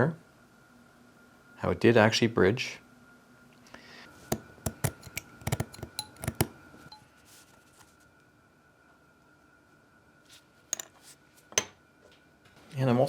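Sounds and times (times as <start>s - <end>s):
plastic parts clicking together: 4.3s - 6.5s.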